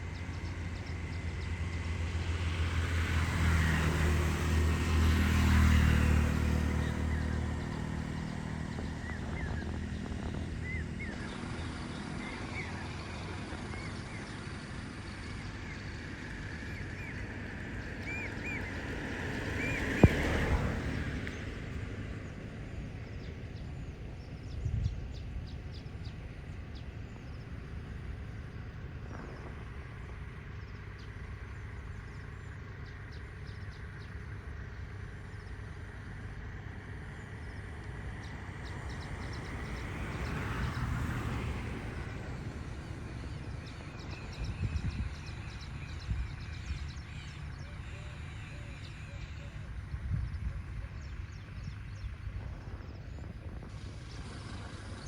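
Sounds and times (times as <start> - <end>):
low rumble of road noise: 0.0 - 55.0
vehicle passing: 0.1 - 23.6, 32.7 - 55.0
small birds chirping: 4.7 - 55.0.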